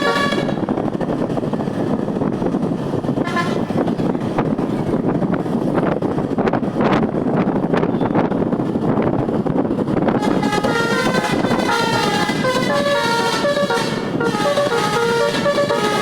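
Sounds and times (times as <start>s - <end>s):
musical air horn tune: 0.0s - 0.6s, 10.2s - 16.0s
vehicle noise: 0.0s - 16.0s.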